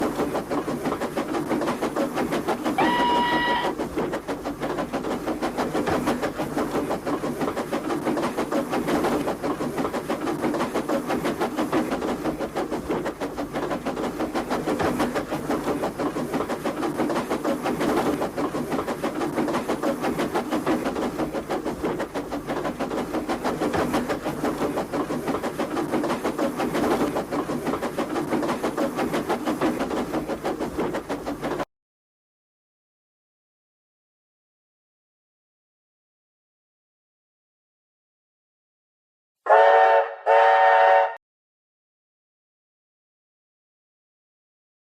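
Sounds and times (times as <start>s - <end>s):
train clatter: 0.0s - 31.6s
train whistle toot: 2.8s - 3.8s, 39.5s - 41.2s.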